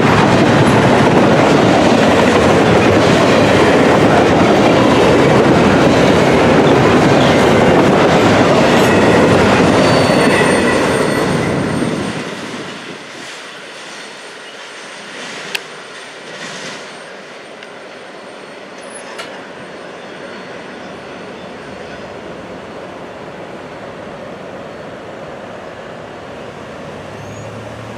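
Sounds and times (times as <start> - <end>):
train wheels clickety-clack: 0.0 - 18.0, 18.7 - 19.7
high wheel squeal: 8.8 - 12.2, 27.1 - 27.6.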